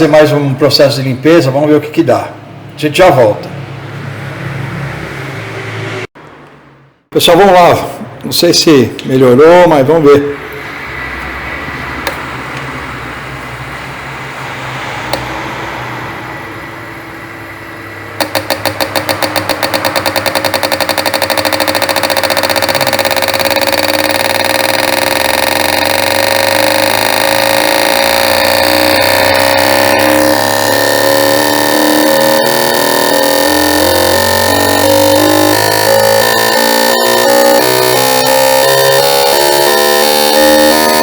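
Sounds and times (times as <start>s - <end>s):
test bench running: 11.6s - 41.0s
fuel injectors rapid clicking: 18.2s - 41.0s.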